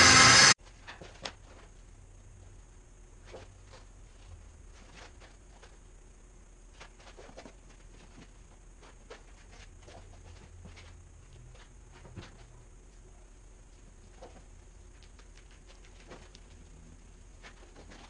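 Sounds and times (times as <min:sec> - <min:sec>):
steady low hum: 0:00.0 - 0:18.0.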